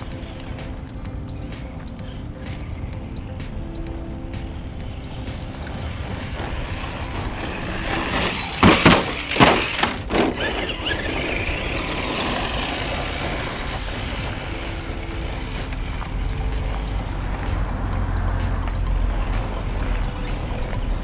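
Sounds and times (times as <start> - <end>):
tyre noise on pavement: 0.0 - 21.0
electric motor whine: 4.8 - 21.0.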